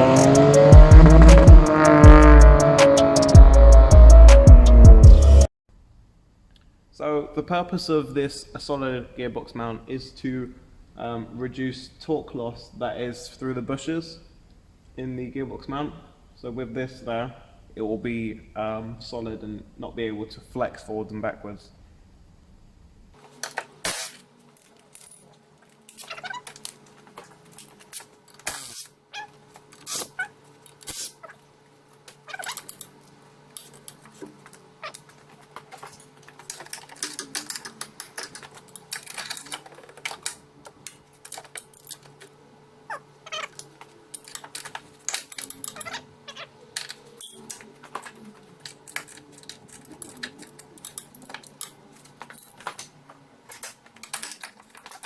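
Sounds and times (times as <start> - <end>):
metal clinks: 32.2 - 35.1, 43.3 - 46.0, 46.8 - 52.8.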